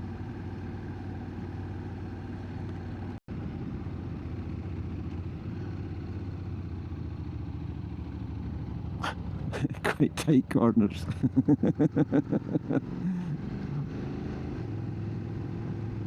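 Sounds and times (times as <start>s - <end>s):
motorcycle engine cruising: 0.0s - 16.0s
wind and road noise: 0.0s - 16.0s.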